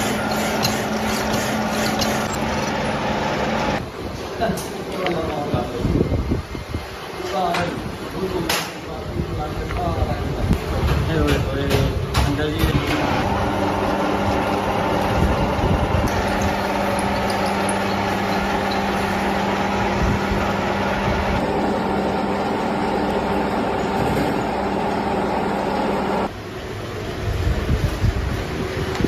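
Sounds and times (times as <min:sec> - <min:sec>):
workshop machine humming: 0:00.0 - 0:04.0, 0:10.5 - 0:26.4.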